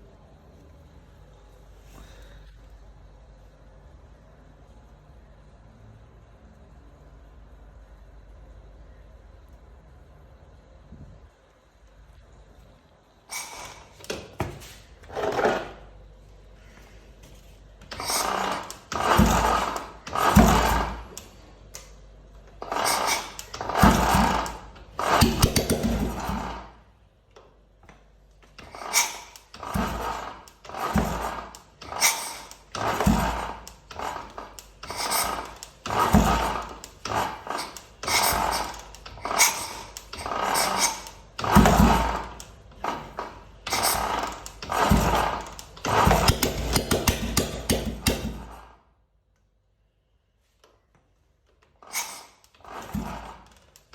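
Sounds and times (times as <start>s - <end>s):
hand tools scraping and clinking metal: 13.3s - 15.8s, 17.2s - 21.9s, 22.5s - 26.6s, 28.6s - 48.6s, 51.8s - 53.9s.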